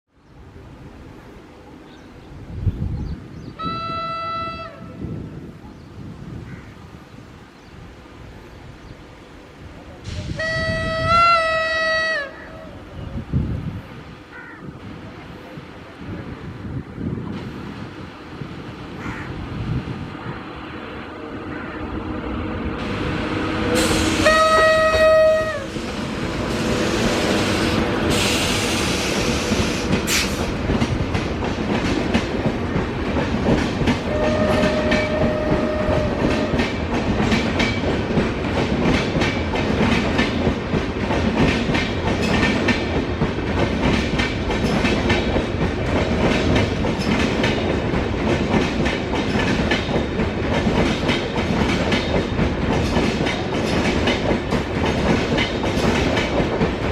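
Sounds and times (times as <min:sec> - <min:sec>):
locomotive horn honking: 0:03.6 - 0:05.0, 0:10.4 - 0:12.4, 0:23.8 - 0:25.8, 0:34.1 - 0:36.6
train wheels clickety-clack: 0:22.8 - 0:56.9.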